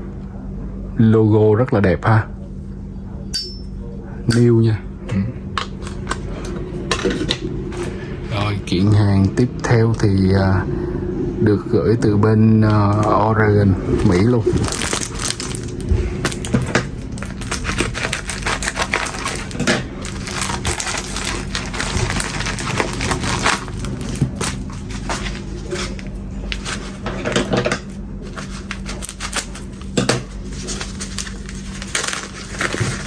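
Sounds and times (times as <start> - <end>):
packaging crinkling and rustling: 13.9 - 33.0.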